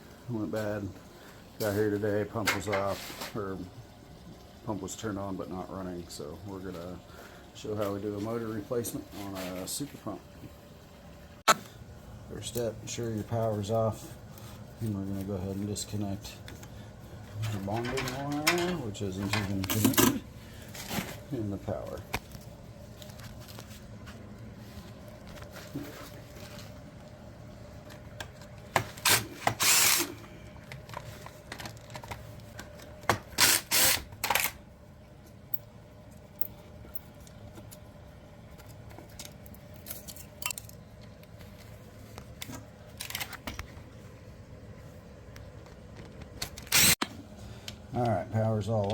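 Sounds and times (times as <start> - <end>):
steady low hum: 0.0 - 48.9
tool handling clicks and knocks: 17.4 - 20.2
power driver whirring: 29.1 - 30.2, 46.6 - 47.1.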